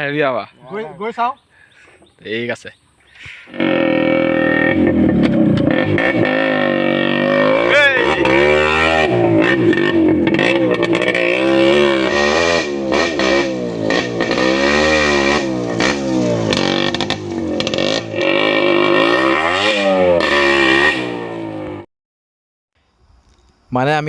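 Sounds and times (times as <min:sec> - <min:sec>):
two-stroke motorcycle engine revving: 0:03.5 - 0:21.9.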